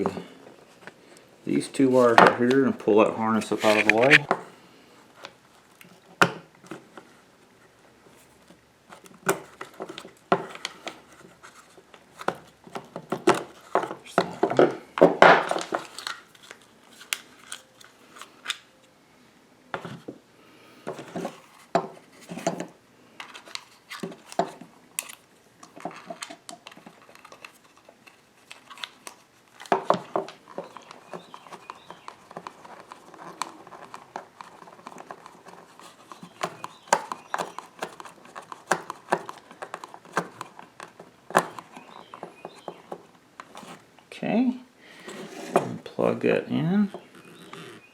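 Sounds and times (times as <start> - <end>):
plastic clicks and scrapes: 3.4 - 4.3, 20.8 - 43.8.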